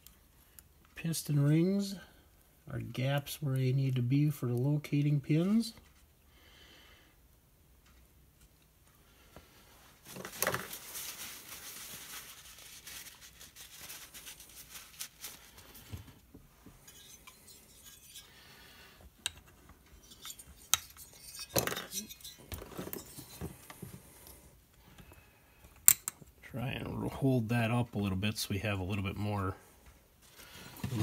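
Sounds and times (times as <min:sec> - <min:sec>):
small metal parts clinking: 0:20.0 - 0:23.4.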